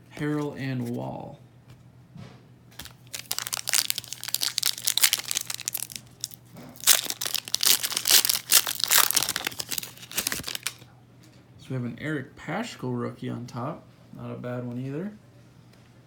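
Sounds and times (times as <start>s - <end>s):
wrapper crinkling and tearing: 2.8s - 10.9s.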